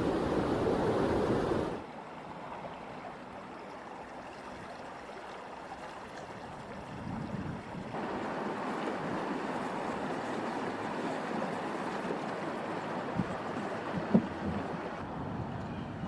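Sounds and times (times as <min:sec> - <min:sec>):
floodwater rushing: 0:00.0 - 0:15.0.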